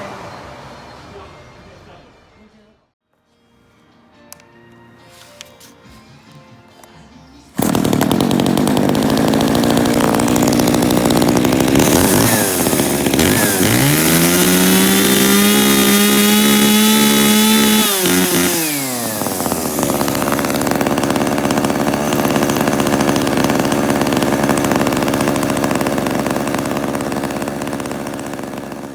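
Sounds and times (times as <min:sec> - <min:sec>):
chainsaw revving: 0:07.6 - 0:28.9.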